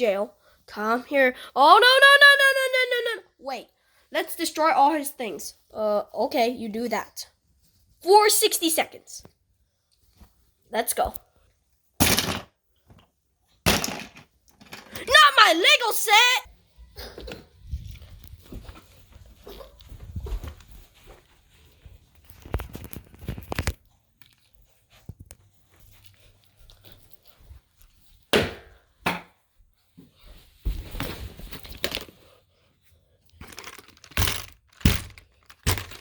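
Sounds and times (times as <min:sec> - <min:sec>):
toys being broken apart: 0:12.0 - 0:12.5, 0:13.7 - 0:15.2, 0:33.4 - 0:36.0.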